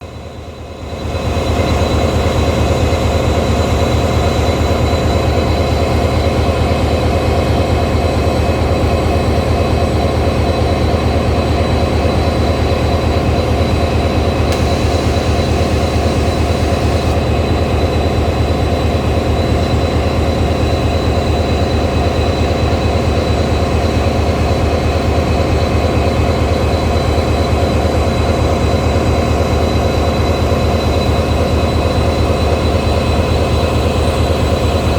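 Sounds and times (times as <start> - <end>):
diesel locomotive engine humming: 0.0 - 34.9
high whine: 12.5 - 21.7.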